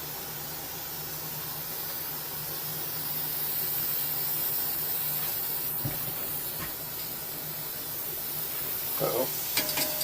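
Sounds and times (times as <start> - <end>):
paint spray hissing: 0.0 - 10.0.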